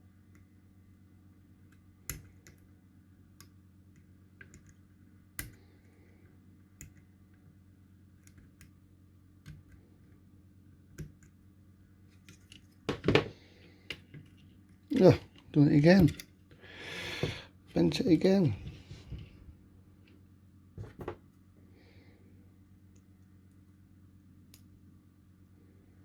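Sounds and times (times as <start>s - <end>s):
steady low hum: 0.0s - 26.0s
small clicks and taps of components: 1.6s - 2.7s, 3.4s - 4.8s, 5.4s - 7.5s, 8.2s - 8.8s, 9.4s - 10.2s, 10.9s - 11.4s.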